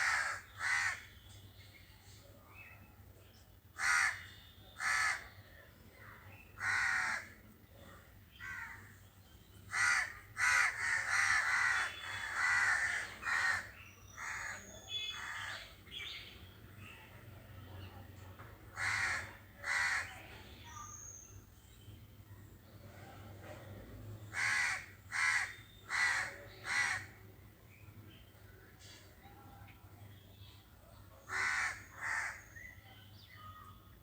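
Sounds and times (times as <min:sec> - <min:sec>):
crows cawing: 0:00.0 - 0:01.0, 0:03.8 - 0:04.2, 0:04.8 - 0:05.3, 0:06.6 - 0:07.4, 0:08.4 - 0:08.9, 0:09.7 - 0:14.6, 0:18.8 - 0:20.2, 0:24.3 - 0:27.2, 0:31.3 - 0:32.5.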